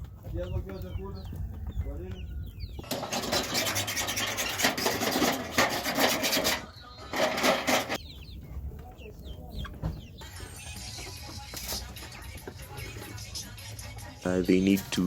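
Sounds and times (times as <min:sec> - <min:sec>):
chickens clucking and chirping: 0:00.0 - 0:15.0
loud rasping rubbing noises: 0:02.8 - 0:08.0.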